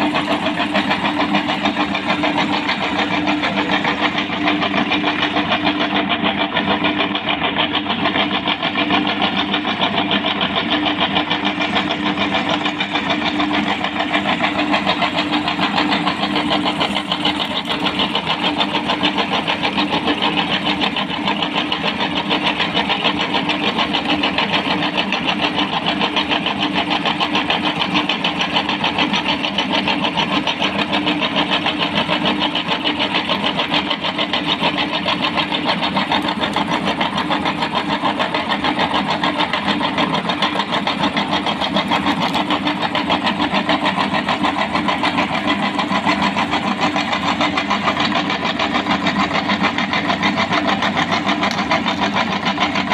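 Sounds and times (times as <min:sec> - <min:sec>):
meat grinder motor running: 0:00.0 - 0:52.9.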